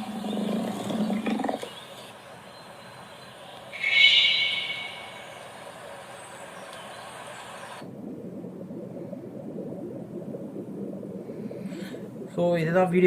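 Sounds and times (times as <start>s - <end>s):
low rumble: 3.8s - 6.3s, 7.8s - 13.0s.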